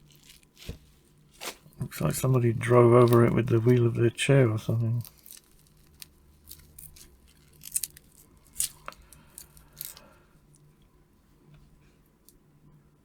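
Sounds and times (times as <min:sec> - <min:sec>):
plastic packaging clicks and crinkles: 0:00.0 - 0:04.0, 0:05.0 - 0:10.7.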